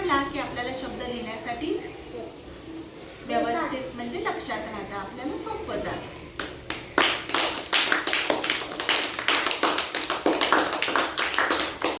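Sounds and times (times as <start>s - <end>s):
small group applauding: 6.4s - 12.0s.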